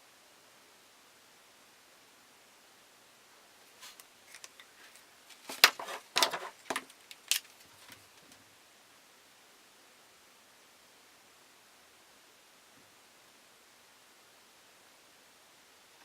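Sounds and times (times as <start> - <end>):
sharp clicks and rustles: 3.8 - 8.4.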